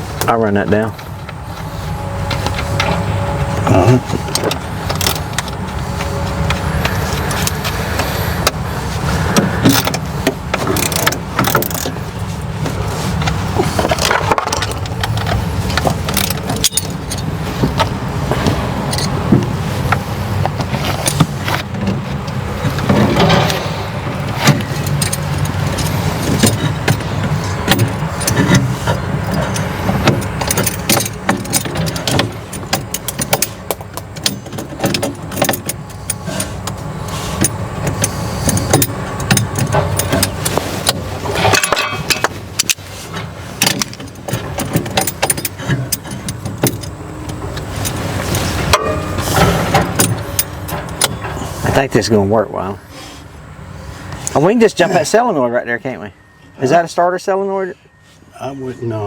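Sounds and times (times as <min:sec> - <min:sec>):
vehicle engine running: 0:00.0 - 0:55.2
metallic clinks and rattles: 0:09.5 - 0:21.6, 0:22.6 - 0:51.6.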